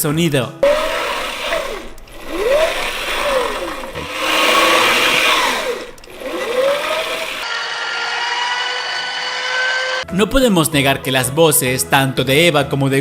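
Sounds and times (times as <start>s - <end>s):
mechanical whirring: 0.6s - 10.0s.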